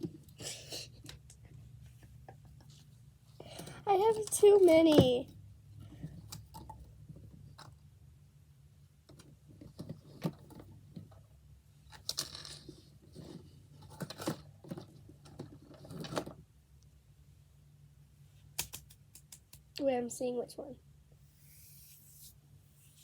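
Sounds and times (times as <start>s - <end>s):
plastic toys clicking and rattling: 11.9s - 16.4s.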